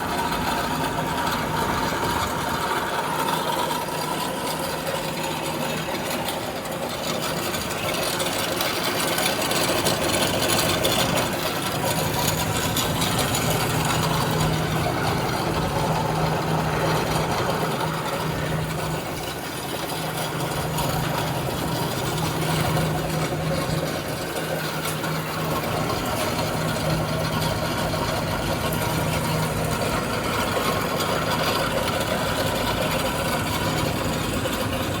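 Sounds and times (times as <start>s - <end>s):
bandsaw running: 0.0s - 35.0s
low hum: 9.2s - 35.0s.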